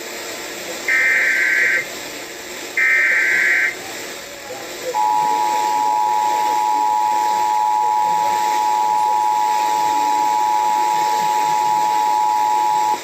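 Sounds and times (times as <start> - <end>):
two-tone alarm: 0.9 - 1.8, 2.8 - 3.8, 5.0 - 13.0.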